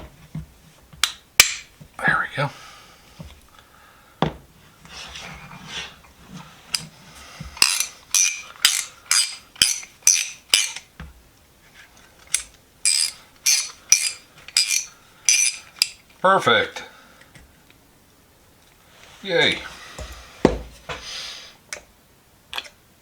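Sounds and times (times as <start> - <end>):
knock: 4.2 - 4.4, 20.4 - 20.7
ratchet wrench clicking: 7.6 - 10.8
handling noise: 19.2 - 21.1.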